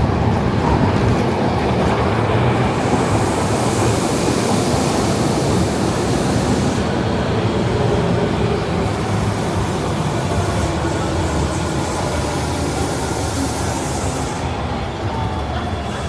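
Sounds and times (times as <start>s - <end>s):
train rumble: 0.0s - 16.0s
high hiss: 2.5s - 14.6s.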